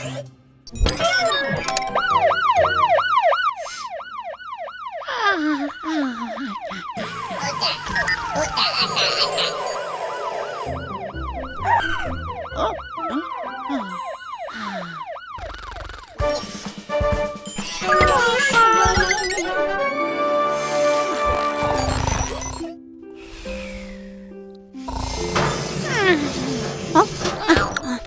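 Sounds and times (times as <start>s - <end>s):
background music: 0.6s - 3.6s, 7.0s - 14.4s, 16.2s - 28.0s
cartoon siren yelp: 0.8s - 16.4s, 17.6s - 19.8s.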